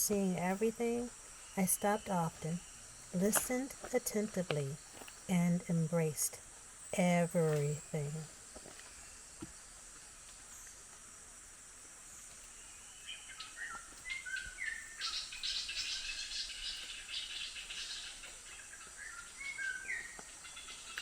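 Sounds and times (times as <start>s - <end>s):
high insect buzz: 0.0s - 21.0s
birds whistling and chattering: 12.2s - 21.0s.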